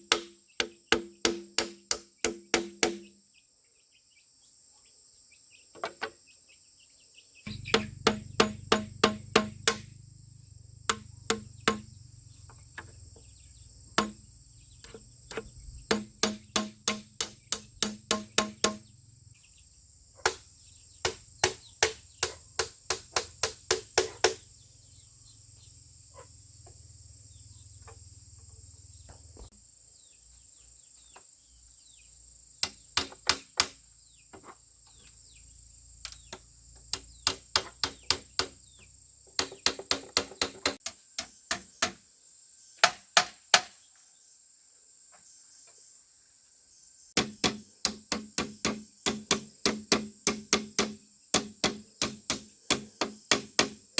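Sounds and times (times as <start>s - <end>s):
rapid strikes on bamboo: 0.0s - 3.2s, 7.5s - 10.0s, 10.8s - 11.9s, 14.0s - 14.2s, 14.8s - 18.9s, 20.2s - 24.4s, 32.6s - 33.8s, 36.1s - 38.6s, 39.4s - 42.0s, 42.8s - 43.8s, 47.2s - 53.9s
high insect drone: 0.0s - 53.9s.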